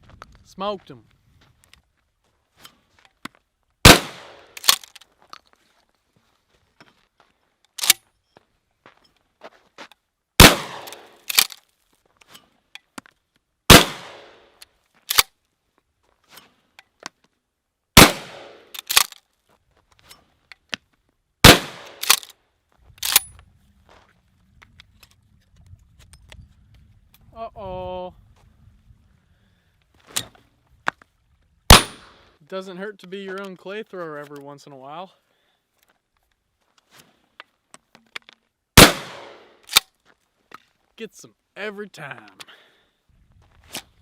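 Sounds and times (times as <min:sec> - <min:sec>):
shotgun shots: 0:03.8 - 0:04.8, 0:10.4 - 0:11.5, 0:13.7 - 0:14.4, 0:18.0 - 0:19.1, 0:21.4 - 0:22.3, 0:31.7 - 0:32.2, 0:38.8 - 0:39.8.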